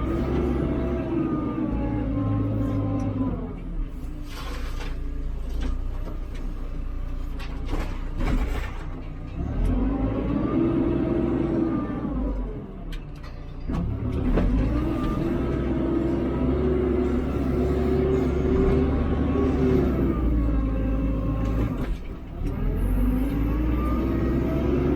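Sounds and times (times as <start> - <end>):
diesel engine revving: 0.0 - 4.6, 9.2 - 12.9, 13.6 - 24.9.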